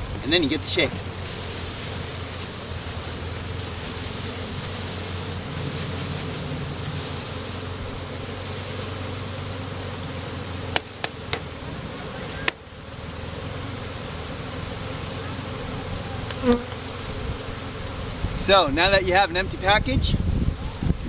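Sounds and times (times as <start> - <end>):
honeybees buzzing: 0.0 - 21.0
sharp knocks on box: 10.8 - 11.5.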